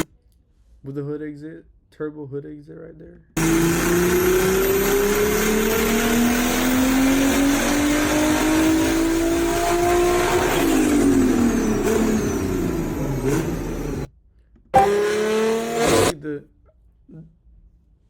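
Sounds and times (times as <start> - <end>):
car engine accelerating: 3.4 - 14.1, 14.8 - 16.1.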